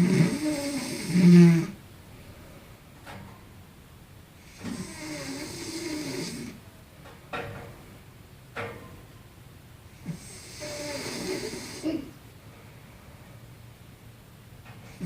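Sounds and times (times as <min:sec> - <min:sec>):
rattling snores: 0:00.0 - 0:01.8, 0:04.4 - 0:06.6, 0:09.9 - 0:12.1, 0:14.8 - 0:15.0.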